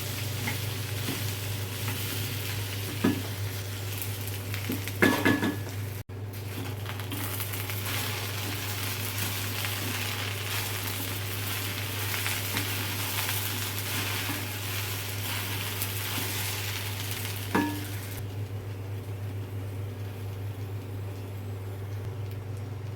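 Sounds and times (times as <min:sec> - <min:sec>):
okra sizzling in a pan: 0:00.0 - 0:22.9.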